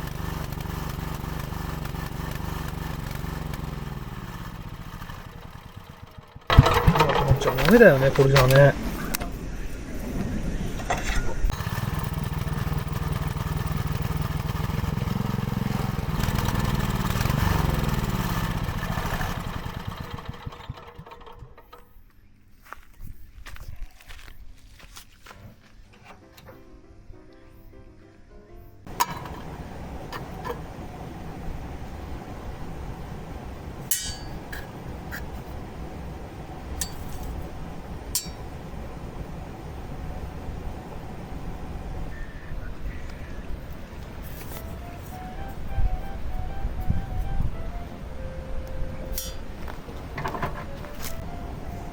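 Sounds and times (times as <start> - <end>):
small engine running and revving: 0.0 - 7.7, 11.5 - 21.6
steady low hum: 28.6 - 51.9
tool striking metal: 33.9 - 34.7, 36.8 - 37.2, 38.2 - 38.5, 49.1 - 49.6.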